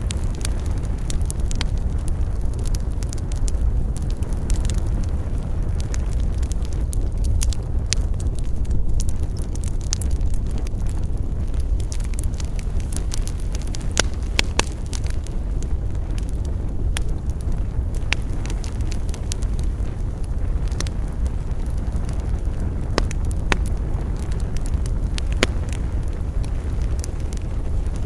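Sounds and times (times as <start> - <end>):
fire crackles and snaps: 0.0 - 28.0
wood fire rumbling: 0.0 - 28.0.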